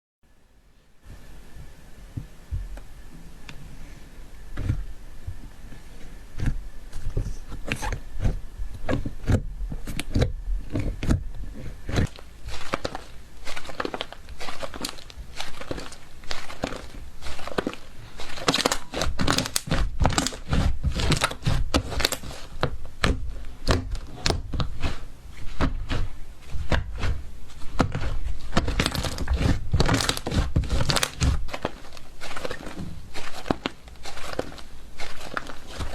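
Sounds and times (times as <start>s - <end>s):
slime crackling and popping: 8.9s - 35.9s.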